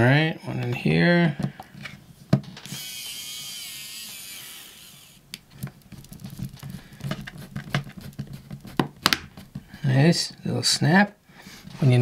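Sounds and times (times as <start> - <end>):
electric screwdriver whine: 2.6 - 5.3
handling clicks and taps: 5.3 - 9.6.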